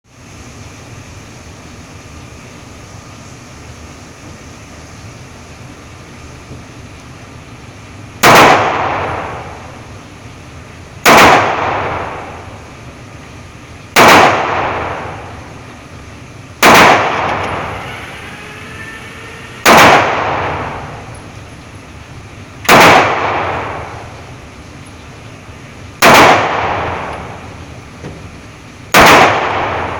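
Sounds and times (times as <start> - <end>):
pistol shots echoing: 8.2 - 9.6, 11.0 - 12.4, 14.0 - 15.3, 16.6 - 17.6, 19.6 - 21.0, 22.6 - 24.2, 26.0 - 27.4, 28.9 - 29.9.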